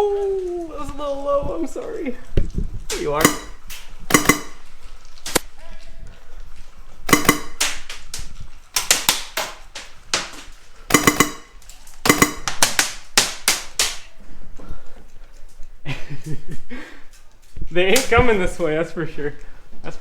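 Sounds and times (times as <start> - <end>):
airsoft rifle shots: 3.2 - 4.7, 7.1 - 7.9, 10.9 - 13.8.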